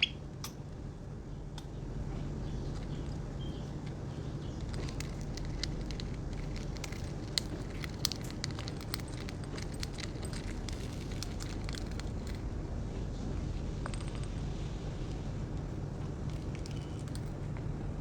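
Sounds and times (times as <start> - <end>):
budgerigars pecking and chewing: 0.0 - 0.6, 1.6 - 12.5, 15.7 - 17.6.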